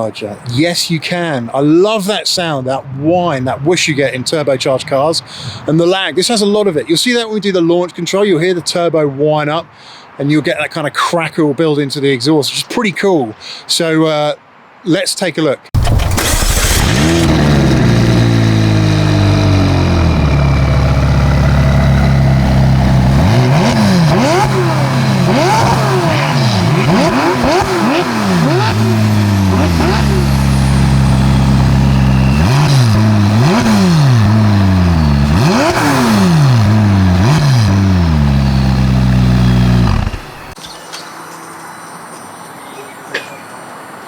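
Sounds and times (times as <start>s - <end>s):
car engine idling and revving: 15.8s - 40.6s.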